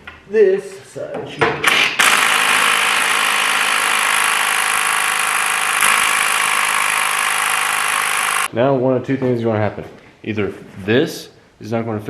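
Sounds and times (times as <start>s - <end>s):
impact wrench running: 1.7s - 8.5s.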